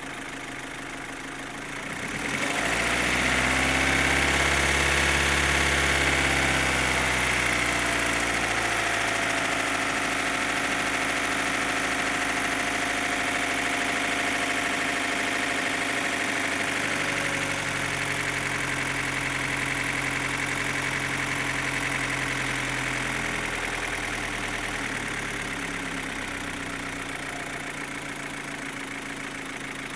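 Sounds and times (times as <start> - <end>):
car engine idling: 0.0 - 29.9.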